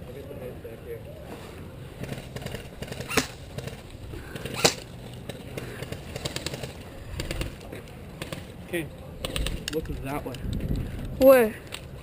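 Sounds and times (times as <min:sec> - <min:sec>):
faint ticks and clatter: 0:09.2 - 0:12.0.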